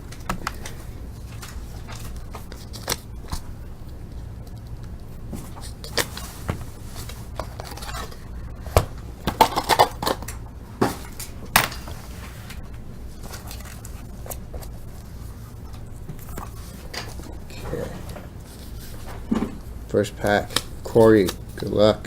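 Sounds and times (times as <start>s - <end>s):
card packs clicking and knocking: 0.0s - 12.0s, 19.0s - 22.0s
low steady hum: 0.0s - 22.0s.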